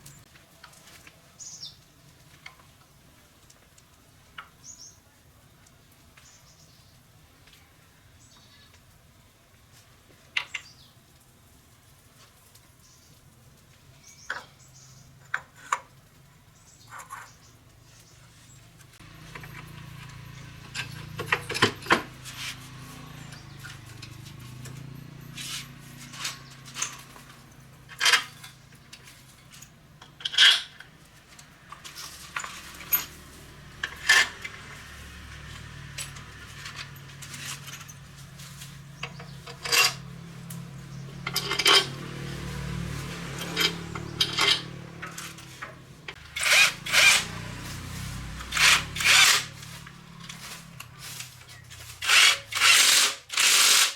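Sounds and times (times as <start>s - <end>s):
metal tools clinking: 19.0s - 53.9s.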